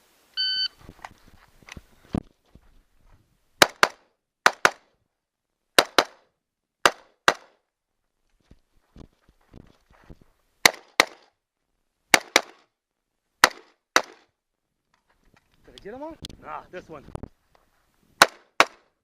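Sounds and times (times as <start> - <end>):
shot timer beep: 0.4 - 0.8
gunshots: 13.4 - 14.2, 18.2 - 18.9.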